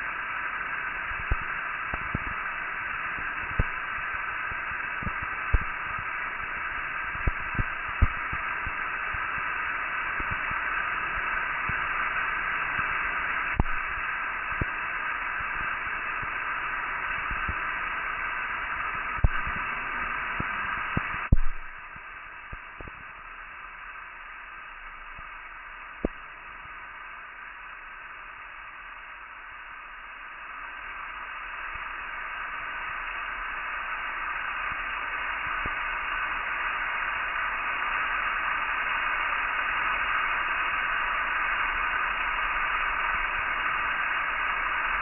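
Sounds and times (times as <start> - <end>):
loud crackle: 0.0 - 27.1
static-like hiss: 0.0 - 45.0
clicks and pops: 1.1 - 2.4, 3.2 - 3.8, 4.5 - 9.5, 10.2 - 10.6, 13.5 - 14.8, 18.9 - 23.1.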